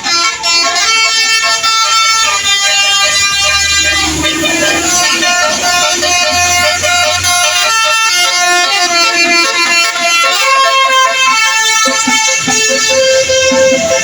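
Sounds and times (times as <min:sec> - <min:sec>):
multi-tone horns playing a tune: 0:00.0 - 0:14.0.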